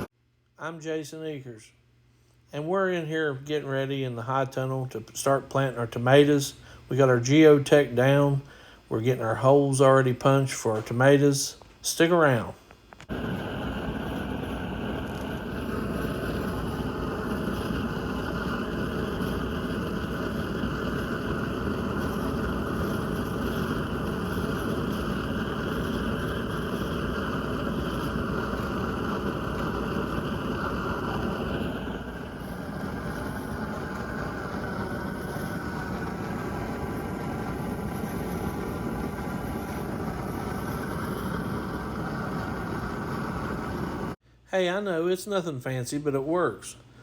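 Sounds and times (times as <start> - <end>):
machine running: 13.1 - 44.2.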